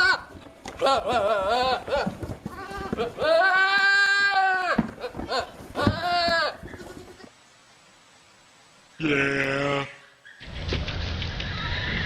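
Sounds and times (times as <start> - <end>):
goat bleating: 0.0 - 7.3.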